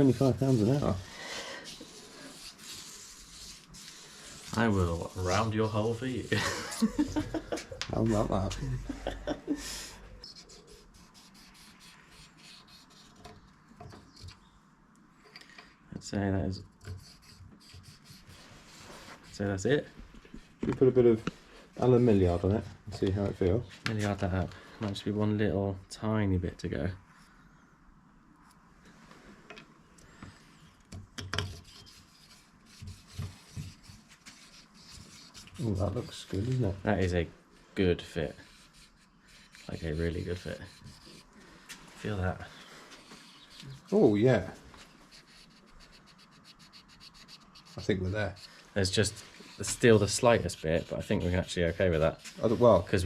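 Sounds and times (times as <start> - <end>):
emery cloth rubbing metal: 0.0 - 1.0, 42.0 - 53.0
hand sanding with abrasive paper: 0.0 - 7.2, 8.0 - 8.7, 10.2 - 13.2, 17.0 - 19.7, 31.6 - 36.8, 38.0 - 53.0.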